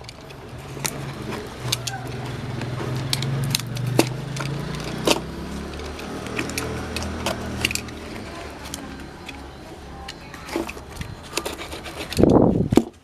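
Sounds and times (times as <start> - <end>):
small hard objects clinking: 0.0 - 13.0.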